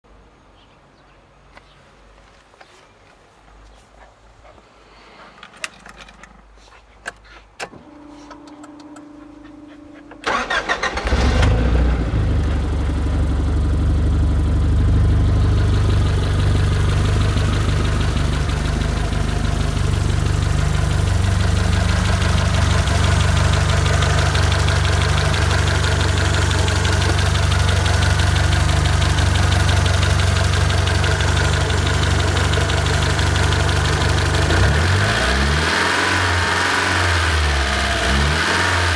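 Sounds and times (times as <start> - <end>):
car engine cranking and idling: 5.4 - 38.9
clicks: 7.0 - 10.7
short steady hum: 7.8 - 12.8.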